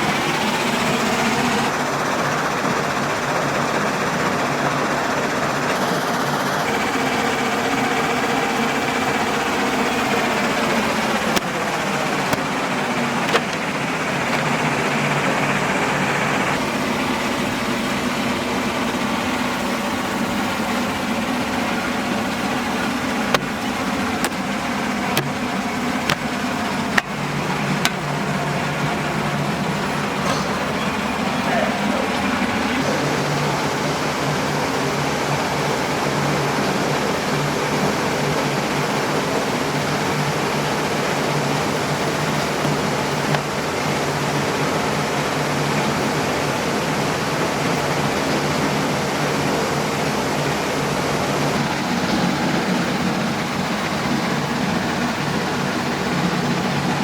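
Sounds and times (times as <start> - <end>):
sharp knocks: 22.4 - 28.2.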